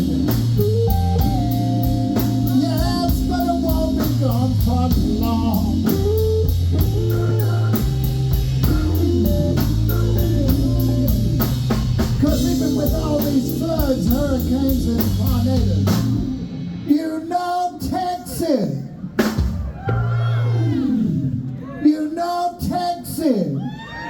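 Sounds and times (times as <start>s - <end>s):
electric lead guitar: 0.0s - 16.9s
bass guitar: 0.0s - 17.0s, 19.2s - 21.6s
drums: 0.0s - 21.7s.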